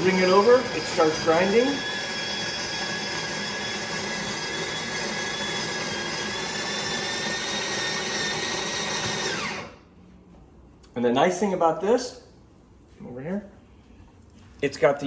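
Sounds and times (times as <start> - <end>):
coffee grinder motor whining: 0.0 - 9.8.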